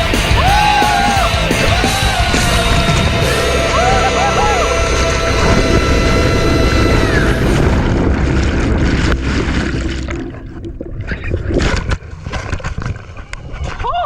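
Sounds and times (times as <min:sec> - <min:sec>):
music tones with falling pitch: 0:00.0 - 0:11.3
seawater rushing and churning: 0:00.0 - 0:14.0
water splashes and drips: 0:07.3 - 0:14.0.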